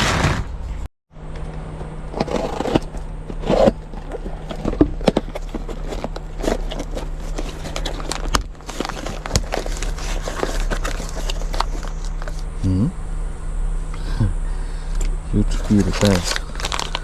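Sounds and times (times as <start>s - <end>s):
steady low hum: 0.4s - 17.0s
plastic bag crackling: 5.1s - 12.3s, 15.6s - 17.0s.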